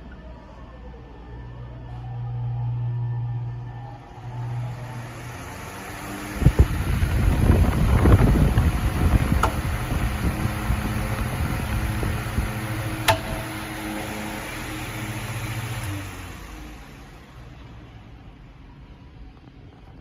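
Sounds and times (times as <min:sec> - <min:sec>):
electric fan motor hum: 0:01.1 - 0:18.4
rushing air: 0:04.7 - 0:17.6.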